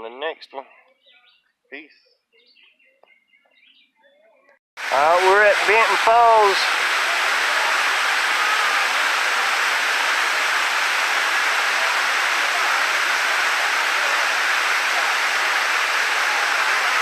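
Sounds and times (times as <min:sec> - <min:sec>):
waterfall pouring: 0:04.8 - 0:17.0.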